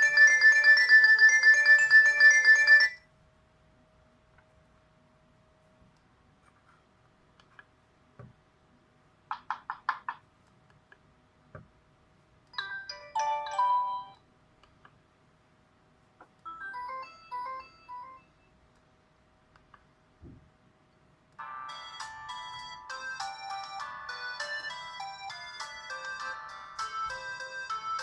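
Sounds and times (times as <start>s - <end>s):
melodic ringtone jingle: 0.0s - 3.0s, 12.6s - 14.2s, 16.5s - 18.3s, 21.4s - 28.0s.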